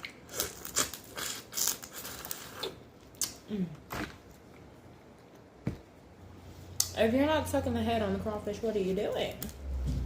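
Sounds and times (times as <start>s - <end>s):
wet cracking and slurping: 0.0s - 4.6s.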